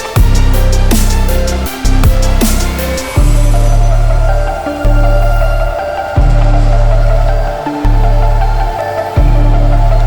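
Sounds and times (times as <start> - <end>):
electronic music with wobbling bass: 0.0 - 10.0.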